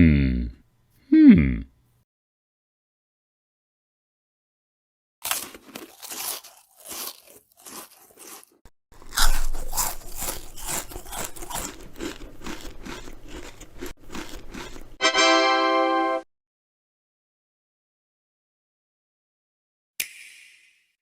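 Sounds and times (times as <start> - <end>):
rapid crunching: 5.2 - 15.0.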